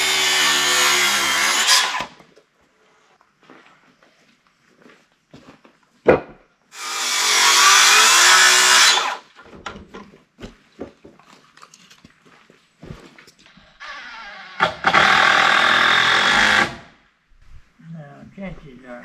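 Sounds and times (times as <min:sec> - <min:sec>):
power tool cutting wood: 0:00.0 - 0:02.2, 0:06.8 - 0:09.3, 0:13.8 - 0:17.6
handling knocks and clicks: 0:17.3 - 0:17.8.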